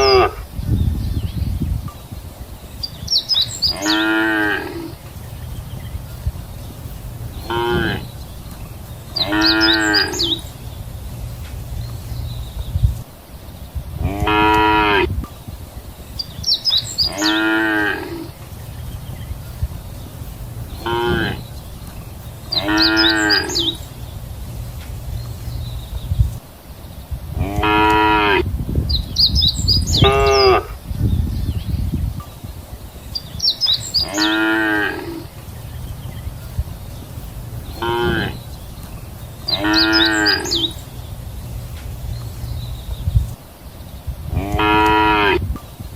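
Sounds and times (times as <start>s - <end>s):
cows mooing: 3.7s - 5.0s, 7.4s - 8.2s, 9.2s - 10.4s, 14.0s - 15.1s, 17.0s - 18.3s, 20.8s - 21.5s, 22.5s - 23.8s, 27.4s - 28.5s, 34.0s - 35.3s, 37.8s - 38.5s, 39.5s - 40.8s, 44.3s - 45.5s.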